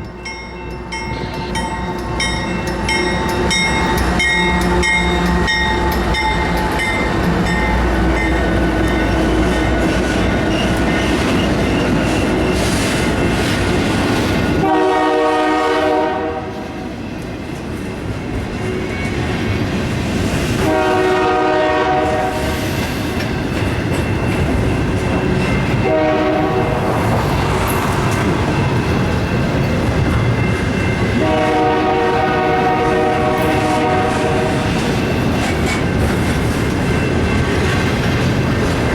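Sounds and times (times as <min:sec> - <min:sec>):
freight train rumbling: 0:00.0 - 0:38.9
train air horn: 0:14.6 - 0:16.9, 0:20.6 - 0:22.8, 0:25.8 - 0:26.9, 0:31.2 - 0:34.8.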